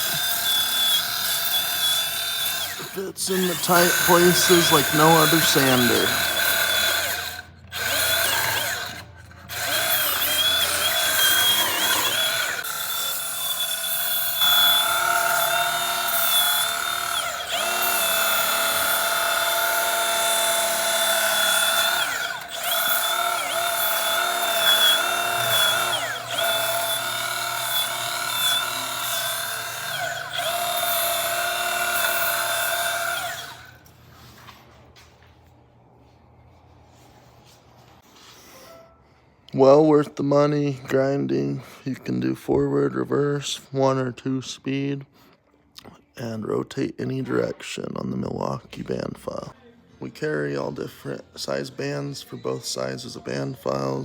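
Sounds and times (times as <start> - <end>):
band file motor whine: 0.0 - 33.8.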